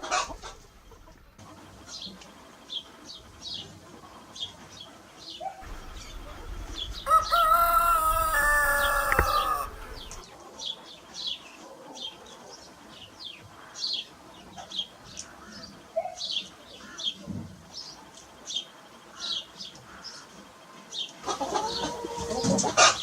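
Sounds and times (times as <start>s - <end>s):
small birds chirping: 0.0s - 23.0s
rooster crowing: 6.8s - 10.2s.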